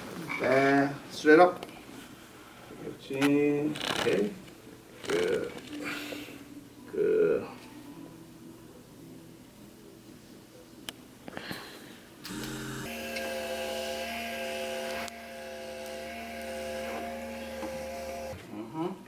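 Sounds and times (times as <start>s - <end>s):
electric motor humming: 12.2s - 18.4s.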